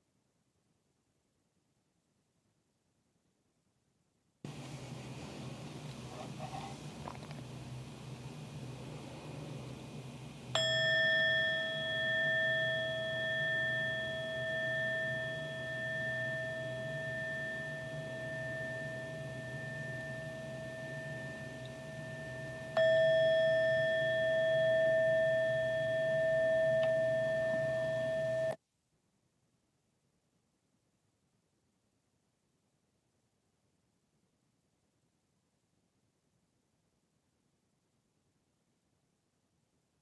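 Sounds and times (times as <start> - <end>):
meditation bell ringing: 10.5 - 28.6.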